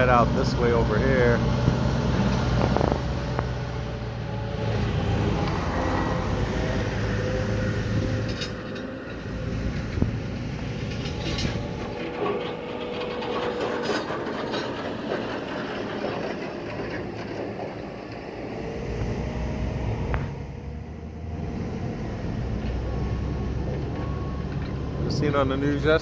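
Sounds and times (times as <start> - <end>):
mechanical rumble of machinery: 0.0 - 26.0
faint squealing tones: 4.0 - 17.4
clatter: 8.1 - 18.3.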